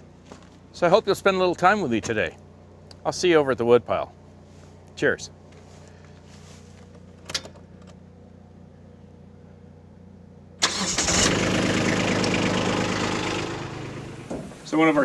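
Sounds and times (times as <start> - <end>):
tractor diesel engine starting: 10.6 - 14.8.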